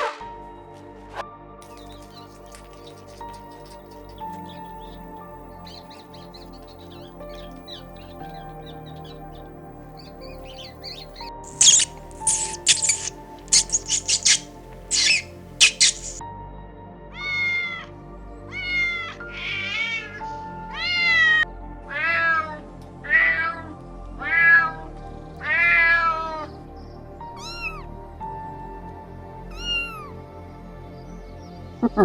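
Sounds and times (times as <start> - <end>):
soft background music: 0.0 - 32.0
cat meowing: 10.5 - 16.2, 17.2 - 17.9, 18.5 - 23.6, 27.4 - 27.8, 29.5 - 30.1
short high chirps: 10.5 - 16.2.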